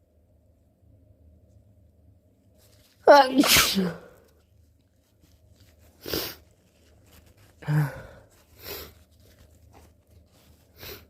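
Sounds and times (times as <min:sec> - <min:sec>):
person sneezing: 0:03.1 - 0:04.2.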